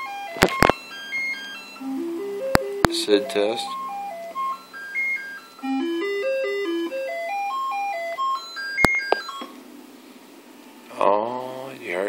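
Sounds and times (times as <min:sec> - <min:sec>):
electronic chip tune notes: 0:00.0 - 0:09.6.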